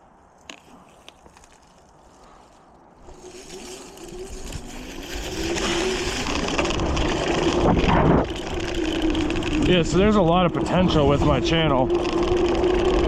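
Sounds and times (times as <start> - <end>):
electric motor hum: 3.0 - 13.0
wind and tyres rushing: 3.0 - 13.0.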